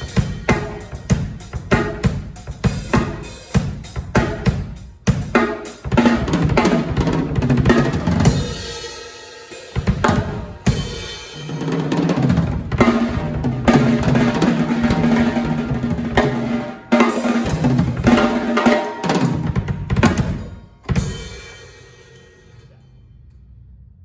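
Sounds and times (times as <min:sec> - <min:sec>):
drum kit playing: 0:00.0 - 0:22.4.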